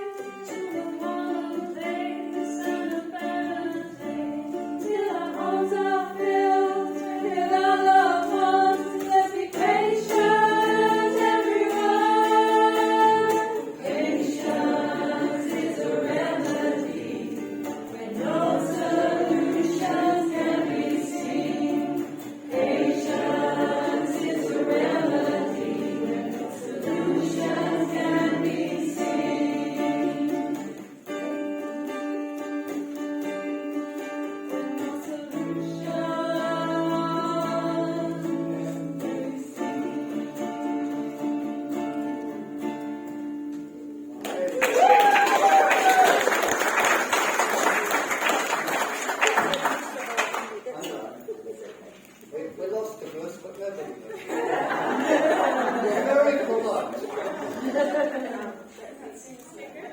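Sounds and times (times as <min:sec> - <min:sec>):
plucked string accompaniment: 0:00.0 - 0:47.2
women singing together: 0:00.1 - 0:31.4, 0:33.4 - 0:43.1, 0:54.3 - 0:56.2.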